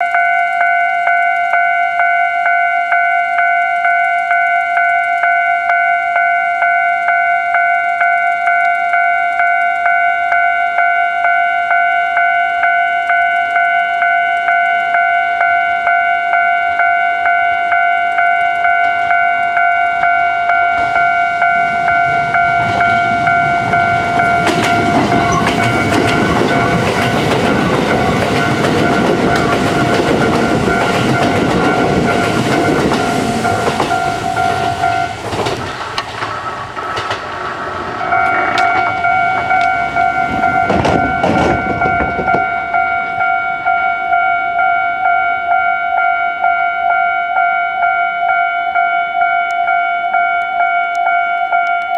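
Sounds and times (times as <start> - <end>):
level crossing alarm dinging: 0.0 - 51.9
train rumble: 18.8 - 46.2.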